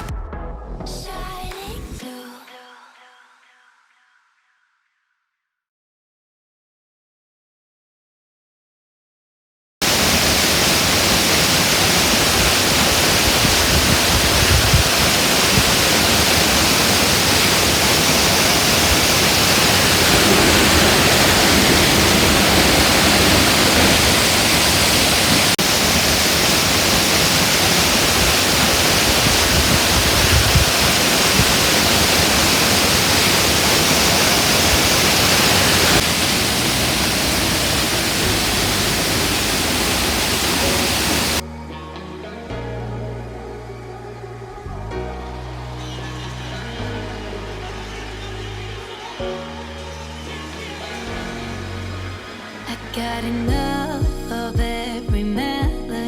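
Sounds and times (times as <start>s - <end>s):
rushing falling water: 9.8s - 41.4s.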